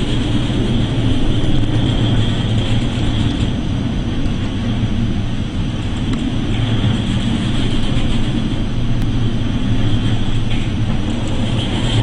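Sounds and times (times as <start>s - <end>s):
low rumble: 0.0s - 12.0s.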